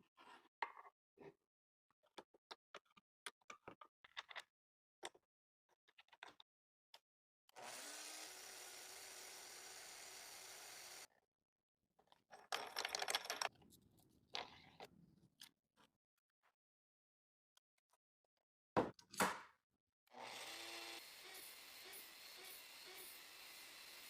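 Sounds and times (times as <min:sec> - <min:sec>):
angle grinder whining: 0:07.6 - 0:11.1, 0:20.2 - 0:24.0.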